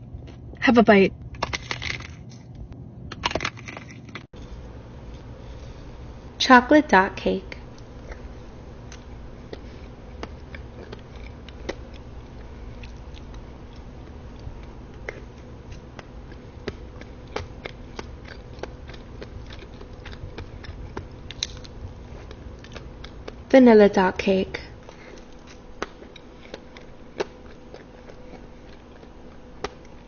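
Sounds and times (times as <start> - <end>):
low hum: 0.0 - 30.0
person chewing cake: 7.6 - 23.5, 24.6 - 30.0.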